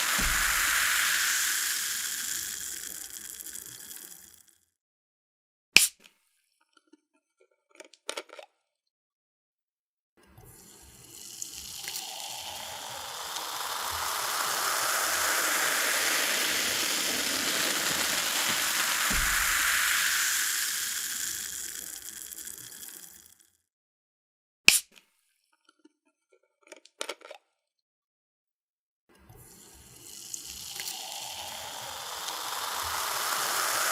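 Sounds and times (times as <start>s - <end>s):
cola pouring and fizzing: 0.0s - 4.5s, 10.4s - 23.4s, 29.4s - 33.9s.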